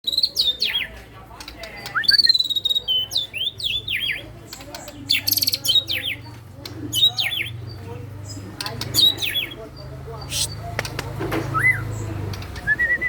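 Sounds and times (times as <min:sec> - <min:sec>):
bird singing whistled phrases: 0:01.8 - 0:04.2, 0:11.5 - 0:12.0, 0:12.6 - 0:13.0.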